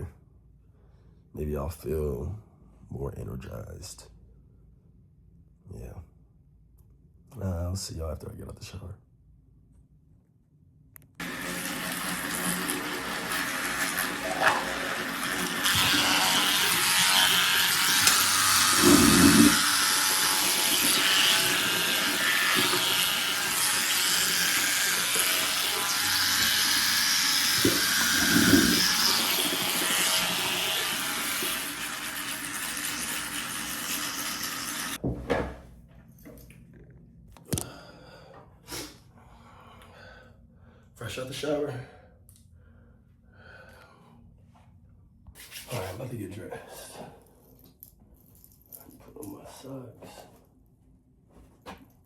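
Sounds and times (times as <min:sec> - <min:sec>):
shower water spray hissing: 0:11.2 - 0:35.0.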